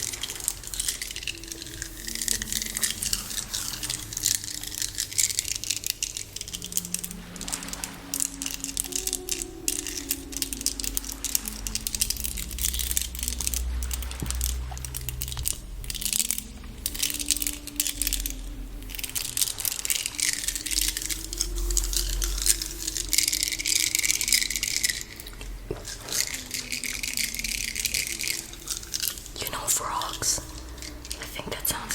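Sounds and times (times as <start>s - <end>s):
crinkling and rattling: 0.0s - 31.9s
person humming melody: 0.0s - 31.9s.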